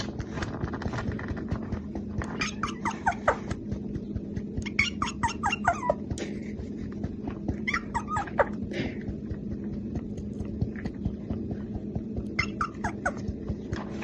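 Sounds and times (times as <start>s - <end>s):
steady low hum: 0.0s - 14.0s
kitten mewing: 2.2s - 3.6s, 7.5s - 8.9s, 12.2s - 13.6s.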